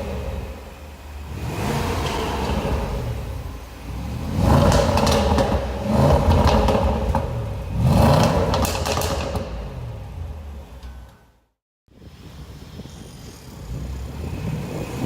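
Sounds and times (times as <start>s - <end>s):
engine revving: 0.0s - 10.8s
exhaust crackles and pops: 0.0s - 11.3s.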